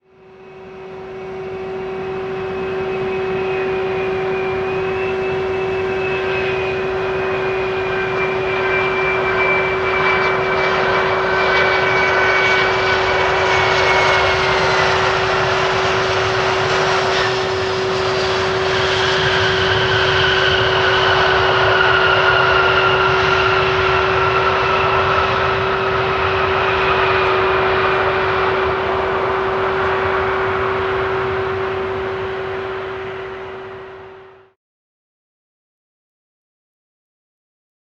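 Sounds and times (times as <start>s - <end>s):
jet aircraft passing: 0.2s - 34.4s.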